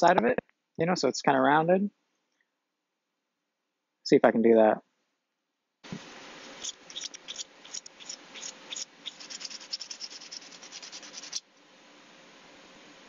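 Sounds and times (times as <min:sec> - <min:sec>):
faint steady hiss: 0:00.0 - 0:02.8, 0:05.8 - 0:13.0
sandpaper rubbing on wood: 0:06.0 - 0:11.4.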